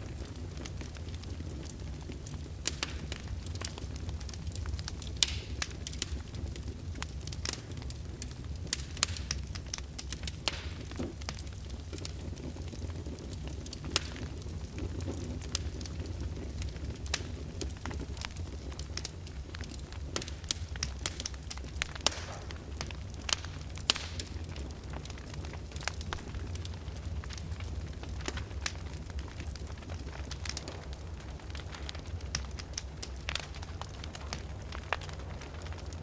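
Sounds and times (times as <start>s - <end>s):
fire crackling: 0.0s - 36.0s
sharp pops and snaps of fire: 0.0s - 36.0s.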